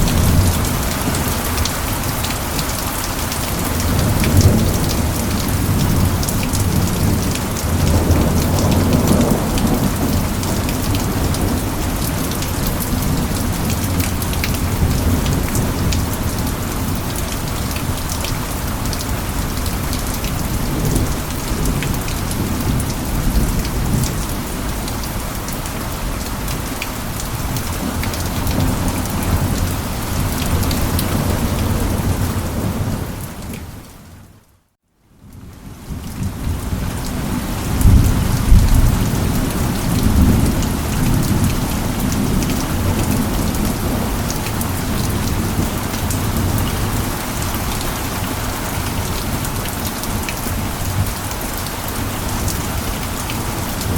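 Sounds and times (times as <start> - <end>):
thunder rumbling: 0.0 - 2.0, 37.6 - 47.1
heavy rain: 0.0 - 53.9.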